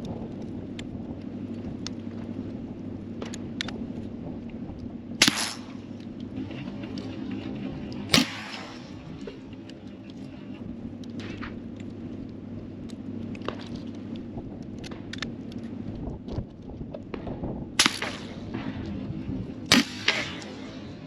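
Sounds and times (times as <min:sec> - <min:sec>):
low hum: 0:00.0 - 0:21.0
suppressed gunshots: 0:05.2 - 0:10.3, 0:11.0 - 0:12.0, 0:17.1 - 0:21.0.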